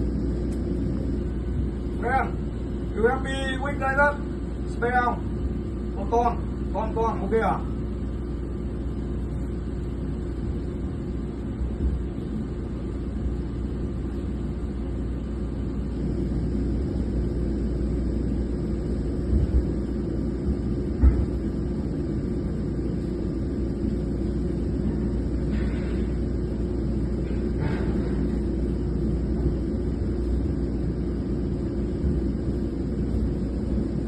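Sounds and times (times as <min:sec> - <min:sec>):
drilling rig machinery rumbling: 0:00.0 - 0:34.0.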